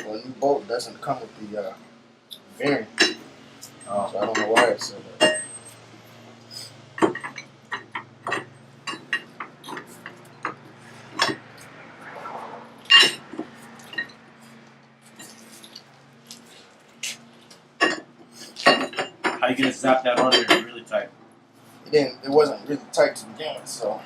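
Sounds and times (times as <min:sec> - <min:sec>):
metal tools clinking: 0:02.3 - 0:11.8, 0:12.8 - 0:16.4, 0:17.5 - 0:21.0
metal clank: 0:03.0 - 0:05.9, 0:06.6 - 0:11.6, 0:12.8 - 0:14.2, 0:17.8 - 0:21.0.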